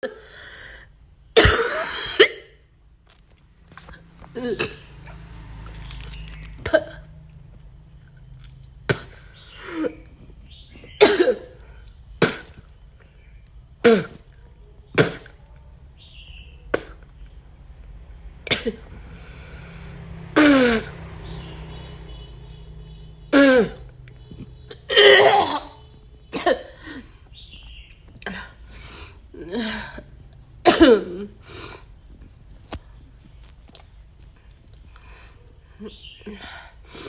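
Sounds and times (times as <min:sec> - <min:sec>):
woman coughing: 0:01.4 - 0:02.6, 0:04.4 - 0:05.0, 0:11.0 - 0:11.6, 0:24.6 - 0:27.1, 0:30.6 - 0:31.3
woman retching: 0:04.3 - 0:04.9.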